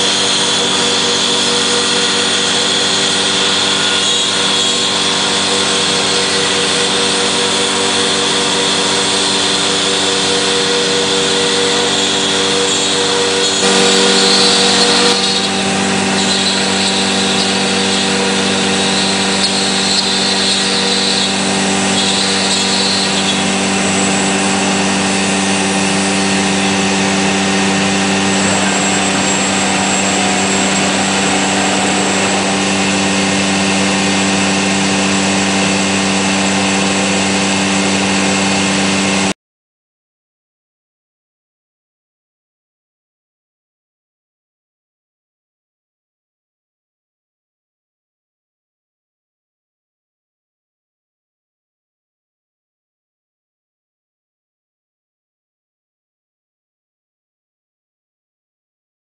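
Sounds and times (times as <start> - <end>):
router spindle whine: 0.0 - 39.3
router cutting wood: 0.0 - 39.4.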